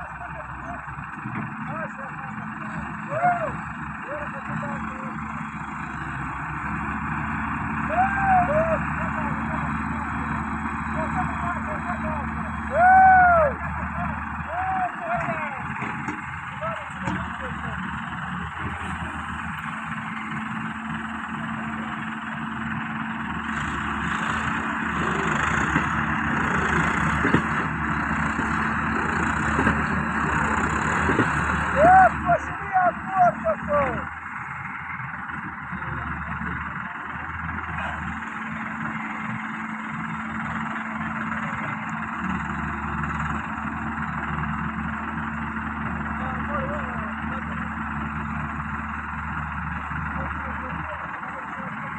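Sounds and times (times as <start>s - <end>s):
heavy diesel engine running: 0.0s - 51.9s.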